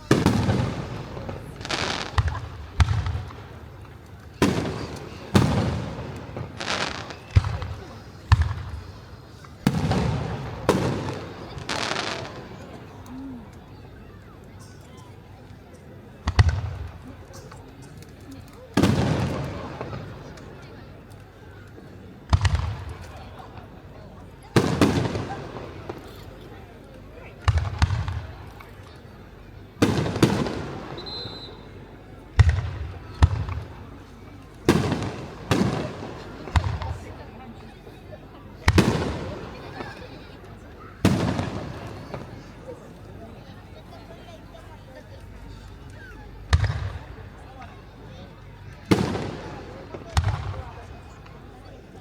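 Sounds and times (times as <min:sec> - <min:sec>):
firework shells booming: 0:00.1 - 0:12.6, 0:18.8 - 0:20.0, 0:34.7 - 0:37.1, 0:38.7 - 0:39.9, 0:41.0 - 0:42.3, 0:48.9 - 0:51.4
firework shells bursting with echo: 0:34.7 - 0:37.1, 0:41.0 - 0:42.3, 0:48.9 - 0:51.4.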